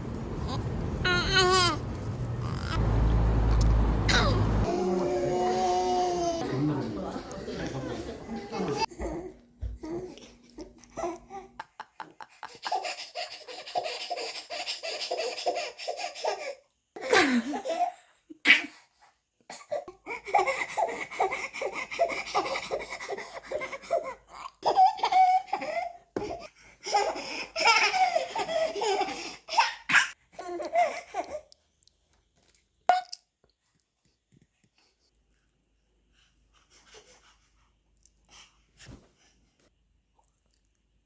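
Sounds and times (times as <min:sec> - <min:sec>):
baby belly-laughing: 0:00.4 - 0:02.8, 0:04.1 - 0:06.4.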